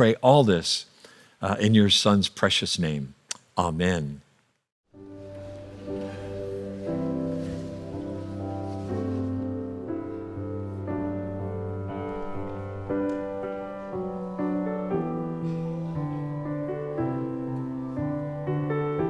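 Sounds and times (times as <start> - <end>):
slow piano chords: 5.0 - 19.0.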